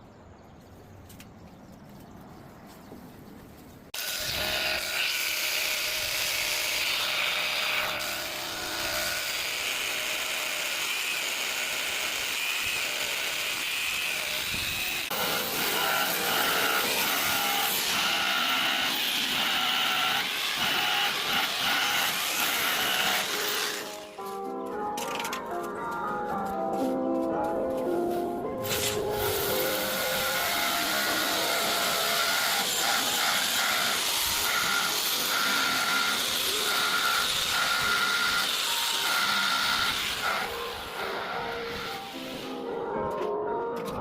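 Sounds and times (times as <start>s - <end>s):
power tool grinding stone: 4.0s - 24.2s, 28.6s - 42.6s.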